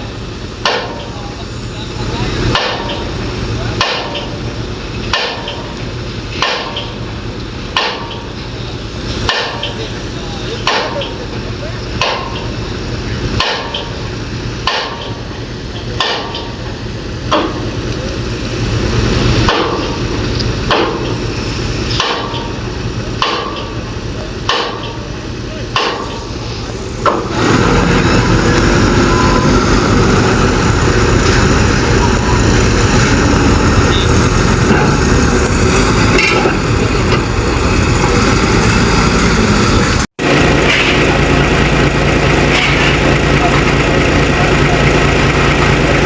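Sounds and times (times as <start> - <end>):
constant low drone: 0.0 - 46.0
hammering: 0.6 - 1.1, 2.5 - 3.1, 3.8 - 4.4, 5.1 - 7.0, 7.7 - 8.4, 9.2 - 9.9, 10.6 - 11.2, 12.0 - 12.6, 13.4 - 14.0, 14.6 - 16.6, 17.3 - 17.8, 19.4 - 21.2, 21.9 - 23.8, 24.4 - 25.1, 25.7 - 26.3, 27.0 - 27.4.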